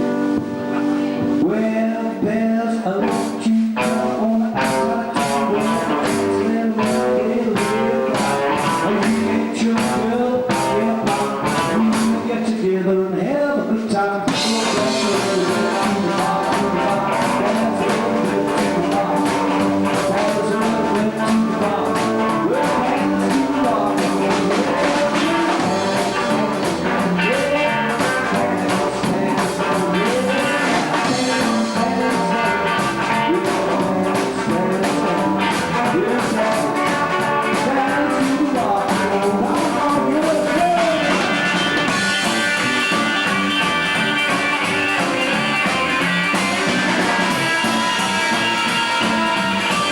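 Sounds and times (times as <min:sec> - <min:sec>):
rockabilly band playing: 0:00.0 - 0:49.9
electric guitar bent notes: 0:14.3 - 0:49.9.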